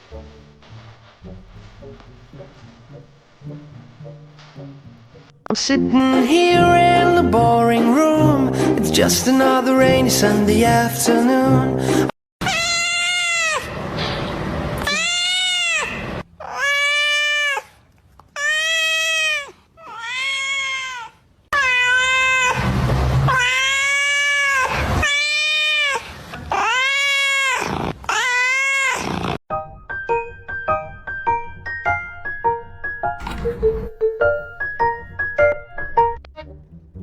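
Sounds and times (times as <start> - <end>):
cat meowing: 12.4 - 17.7, 18.4 - 29.4.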